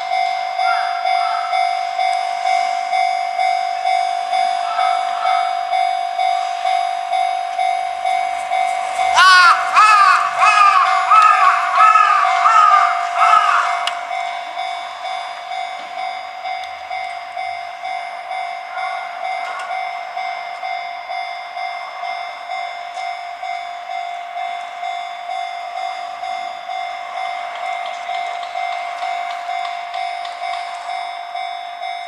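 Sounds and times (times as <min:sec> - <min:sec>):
level-crossing warning bell: 0:00.0 - 0:32.0.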